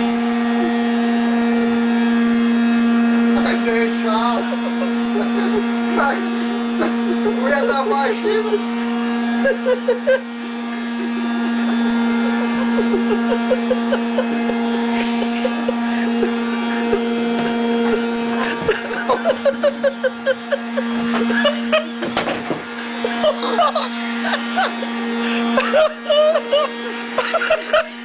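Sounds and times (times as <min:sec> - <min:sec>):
vacuum cleaner running: 0:00.0 - 0:28.0.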